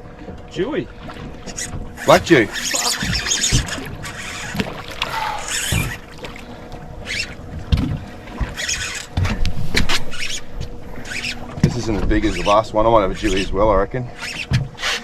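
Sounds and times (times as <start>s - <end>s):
water splashing around boat: 0.0s - 11.7s.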